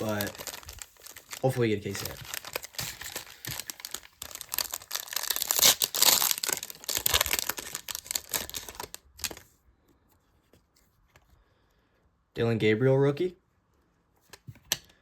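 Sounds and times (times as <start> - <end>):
card pack wrapper ripping: 0.0 - 9.5.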